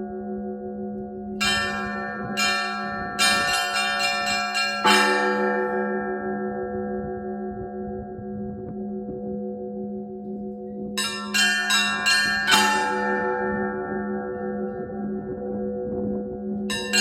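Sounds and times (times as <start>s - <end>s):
large bell humming: 0.0s - 17.0s
small high bells struck: 1.4s - 5.8s, 11.0s - 14.7s, 16.7s - 17.0s.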